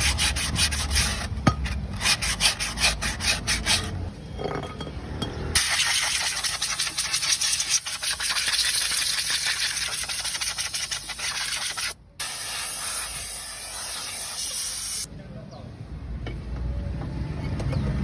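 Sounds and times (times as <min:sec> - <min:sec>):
rubbing or scraping strokes: 0:00.0 - 0:04.1, 0:05.6 - 0:12.0.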